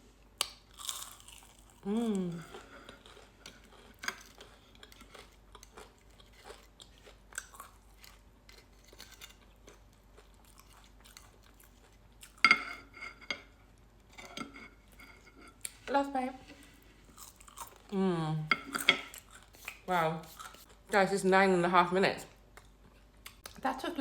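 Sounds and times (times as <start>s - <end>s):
person chewing crunchy food: 0.4s - 12.4s, 16.6s - 18.0s, 18.7s - 20.9s.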